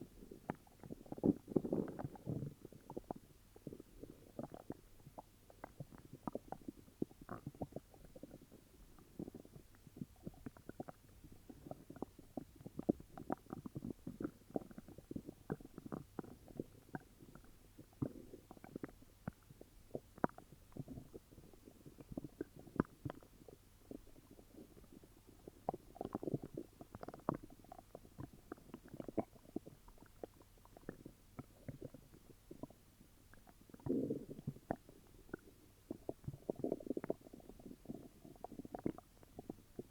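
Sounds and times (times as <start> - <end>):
stomach growling and gurgling: 0.0 - 39.9.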